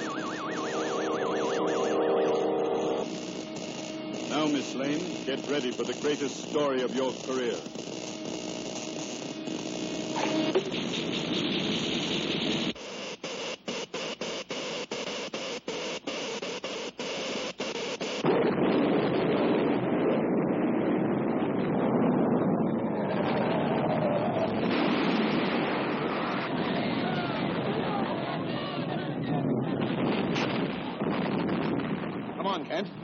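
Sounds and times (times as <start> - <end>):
electrical machine noise: 0.0 - 18.3
deep steady noise: 0.0 - 28.3.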